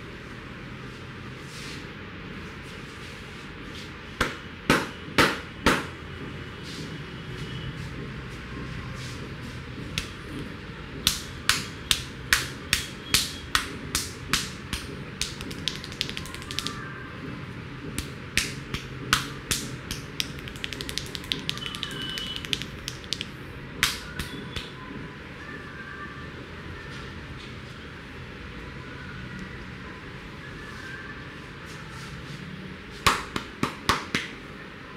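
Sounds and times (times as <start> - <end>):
hands slapping a head: 10.0 - 10.2, 11.1 - 16.8, 18.0 - 24.7, 33.0 - 34.4.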